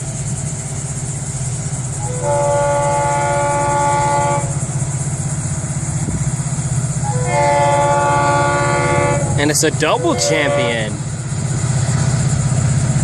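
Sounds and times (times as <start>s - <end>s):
low rumble of train: 0.0s - 13.0s
locomotive air horn blast: 2.0s - 4.7s, 7.0s - 11.0s.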